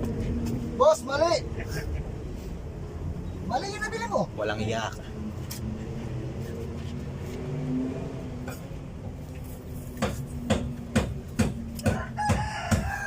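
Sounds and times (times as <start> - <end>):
hammer blows: 10.0 - 13.0.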